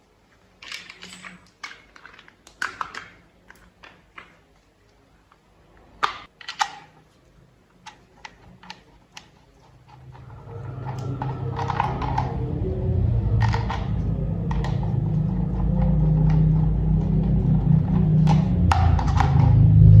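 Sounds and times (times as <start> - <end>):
plastic toy parts clicking: 0.6 - 4.4, 6.0 - 7.0
low steady hum: 7.0 - 20.0.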